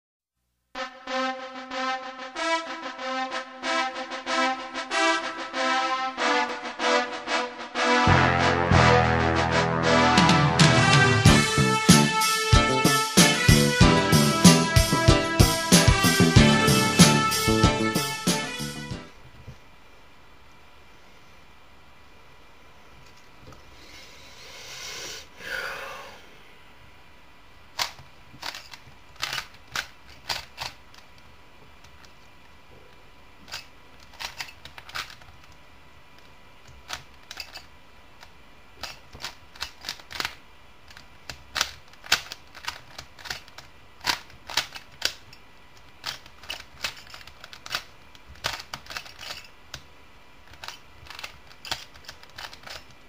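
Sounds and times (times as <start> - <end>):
puzzle cube plastic clicks: 27.8 - 31.2, 33.4 - 35.6, 36.2 - 53.0.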